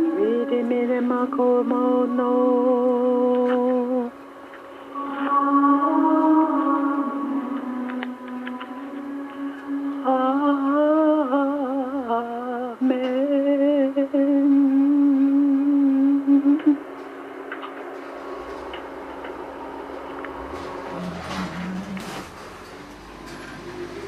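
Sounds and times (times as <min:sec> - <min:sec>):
steady low drone: 0:00.0 - 0:12.8, 0:14.0 - 0:24.0
person humming: 0:05.0 - 0:16.8.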